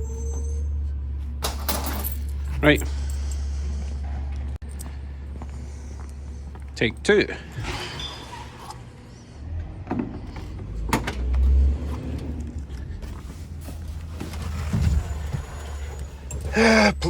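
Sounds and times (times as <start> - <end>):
car engine starting and idling: 8.3 - 17.0.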